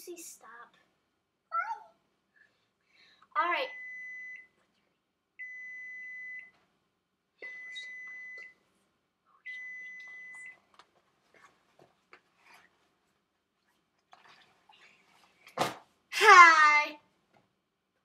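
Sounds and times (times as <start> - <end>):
microwave oven beeping: 3.7 - 4.6, 5.4 - 6.6, 7.4 - 8.6.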